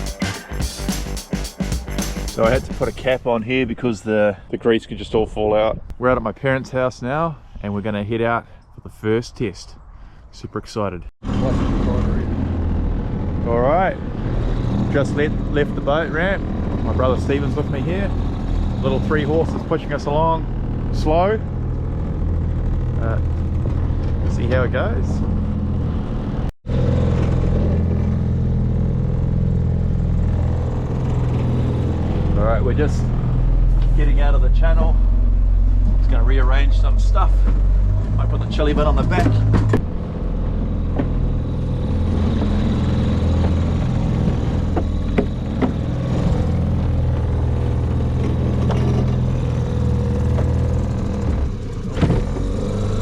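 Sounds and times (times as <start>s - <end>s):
knocks and clunks of gear: 37.4s - 39.9s, 40.9s - 41.3s, 43.3s - 46.2s, 48.1s - 49.6s, 50.2s - 52.8s
outboard motor running: 40.7s - 53.0s.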